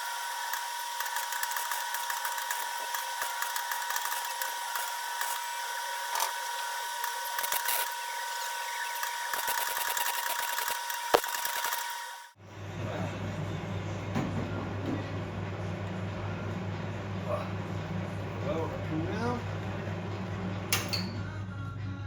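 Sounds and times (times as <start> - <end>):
welding arc crackling: 0.0 - 12.4
steady high hum: 0.0 - 21.6.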